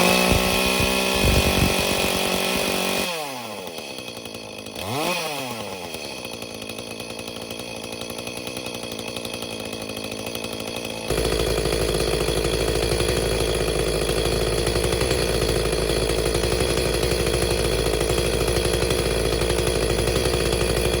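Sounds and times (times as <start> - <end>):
chainsaw running: 0.0 - 21.0.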